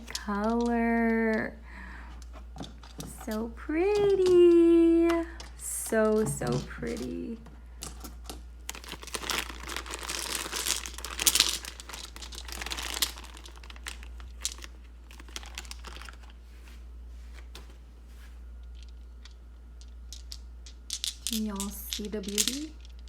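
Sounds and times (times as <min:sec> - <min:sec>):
crystal stones clicking: 0:00.0 - 0:01.6, 0:02.7 - 0:14.7, 0:18.7 - 0:23.0
packaging wrap crumpled and torn: 0:08.7 - 0:16.4.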